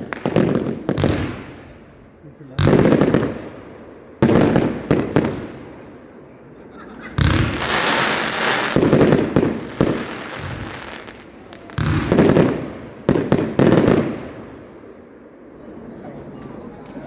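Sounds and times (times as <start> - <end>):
fireworks bangs with crackling: 0.0 - 3.6, 4.2 - 6.0, 7.2 - 14.6.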